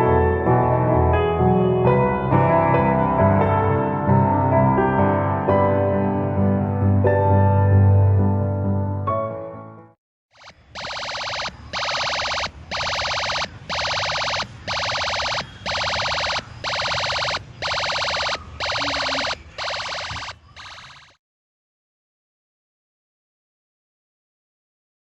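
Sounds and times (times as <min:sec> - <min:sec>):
electronic machine-gun bursts: 0:10.4 - 0:21.2.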